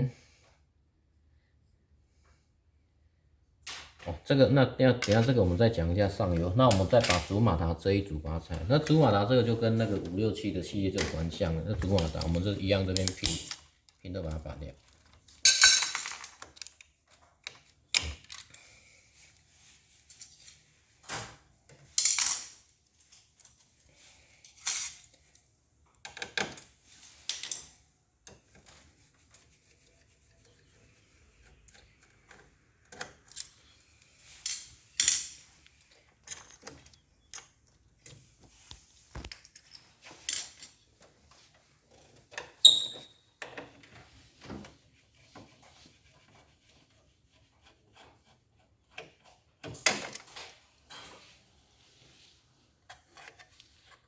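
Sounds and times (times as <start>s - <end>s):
small parts clicking and clinking: 11.7s - 14.0s, 14.8s - 18.7s, 21.8s - 23.8s, 26.0s - 28.8s, 31.6s - 38.2s, 39.1s - 41.5s.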